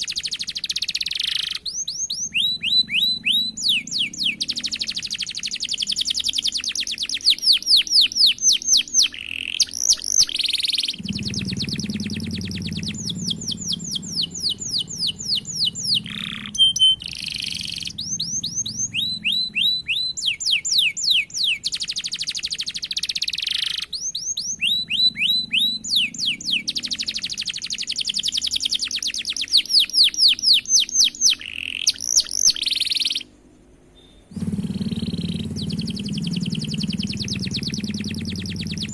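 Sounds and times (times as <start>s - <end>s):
canary singing rolls: 0.0s - 33.3s, 33.9s - 38.9s.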